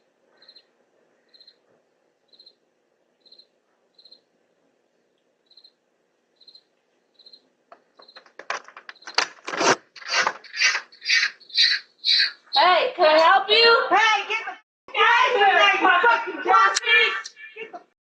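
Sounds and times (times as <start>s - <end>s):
crickets chirping: 0.4s - 1.6s, 2.3s - 2.6s, 3.2s - 4.3s, 5.4s - 9.2s
rhythmic crunching or rustling: 7.7s - 11.0s.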